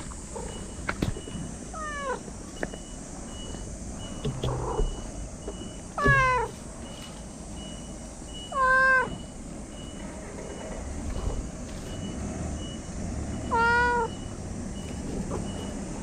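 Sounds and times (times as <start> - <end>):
cat meowing: 1.7 - 2.2, 6.0 - 6.6, 8.5 - 9.3, 13.4 - 14.2
faint electronic beeps: 2.5 - 16.0.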